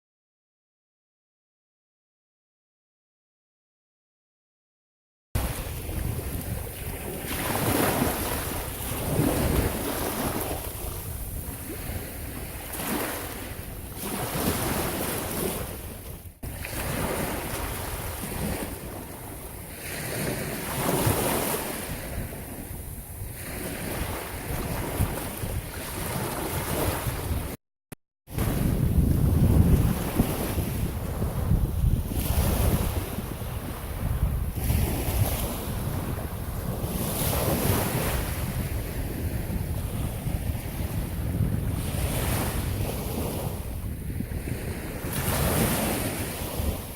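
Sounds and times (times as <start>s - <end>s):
surf breaking on shore: 5.4s - 27.6s
wind buffeting microphone: 5.4s - 27.6s, 28.3s - 46.9s.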